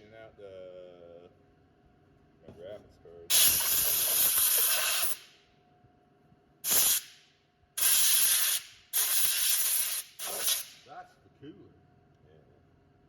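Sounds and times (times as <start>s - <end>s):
compressed air hissing: 3.3s - 5.3s, 6.6s - 7.2s, 7.8s - 10.8s.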